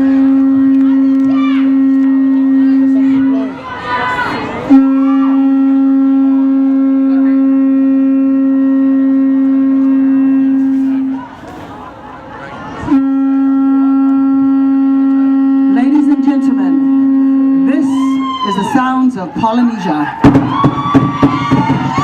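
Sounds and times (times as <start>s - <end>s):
conch shell trumpet blasts: 0.0s - 3.7s, 4.6s - 11.2s, 12.9s - 19.1s.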